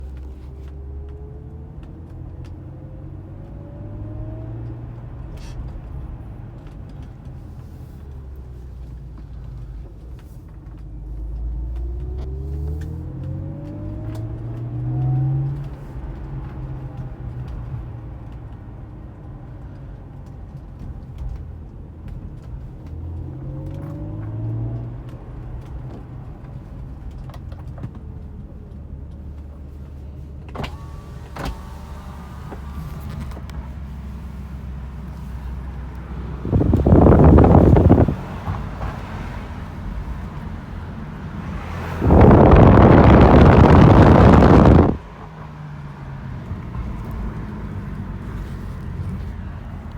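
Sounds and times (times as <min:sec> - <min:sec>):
car engine accelerating: 0:00.0 - 0:49.9
whirring whine: 0:35.9 - 0:38.9, 0:41.1 - 0:45.3.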